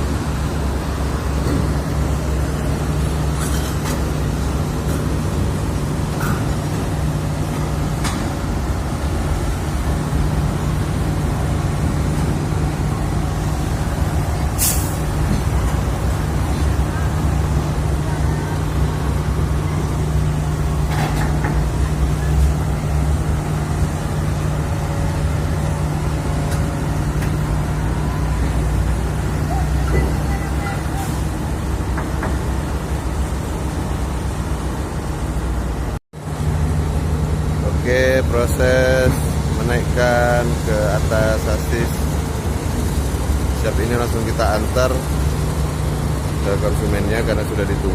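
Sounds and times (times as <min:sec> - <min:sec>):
diesel engine running: 0:00.0 - 0:47.9
air release hiss: 0:14.5 - 0:15.1.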